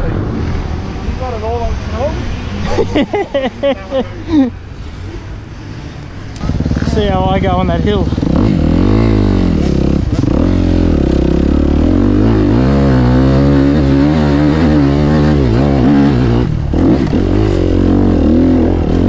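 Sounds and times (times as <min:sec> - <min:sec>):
motocross engine revving: 0:06.3 - 0:19.0.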